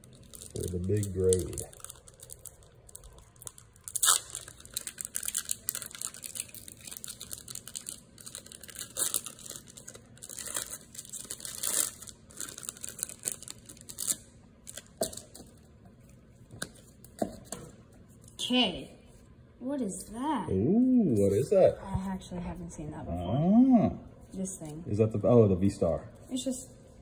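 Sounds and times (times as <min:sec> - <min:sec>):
foil wrapper crinkling and tearing: 0:00.0 - 0:15.5.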